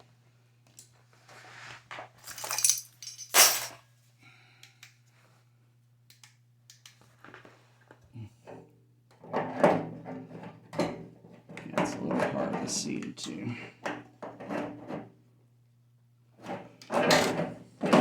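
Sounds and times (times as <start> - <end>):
metal parts scraping and clinking: 2.2 - 3.8
metal clank: 2.4 - 3.8.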